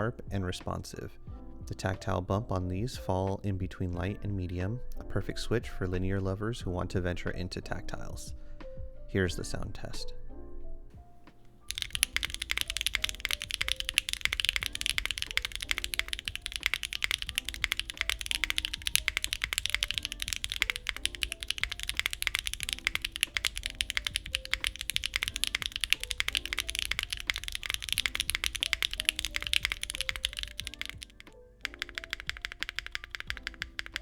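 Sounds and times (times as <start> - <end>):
mechanical keyboard typing: 11.7 - 34.0.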